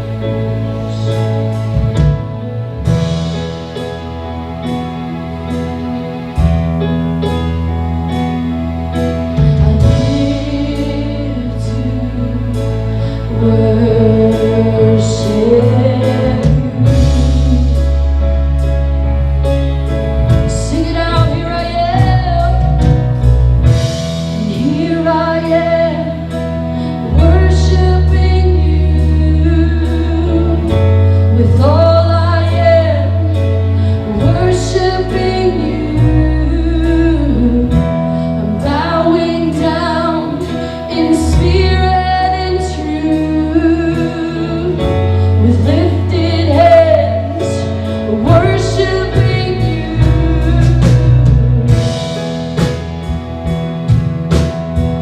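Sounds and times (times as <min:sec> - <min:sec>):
steady bass notes: 0:00.0 - 0:55.0.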